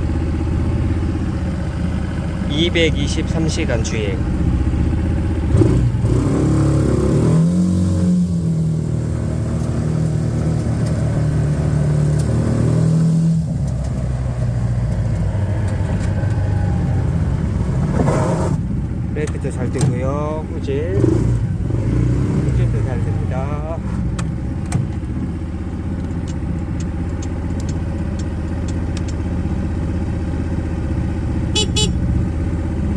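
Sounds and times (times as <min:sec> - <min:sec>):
truck engine running: 0:00.0 - 0:07.1, 0:07.8 - 0:22.0, 0:22.6 - 0:32.9
sharp click: 0:26.0 - 0:29.2.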